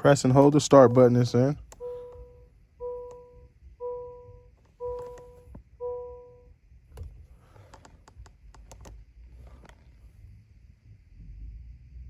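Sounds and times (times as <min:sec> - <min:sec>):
electronic warning chime beeping: 0:01.8 - 0:06.5.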